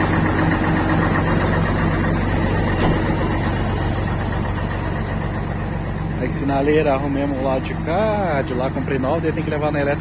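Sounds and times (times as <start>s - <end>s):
diesel truck engine idling: 0.0s - 10.0s.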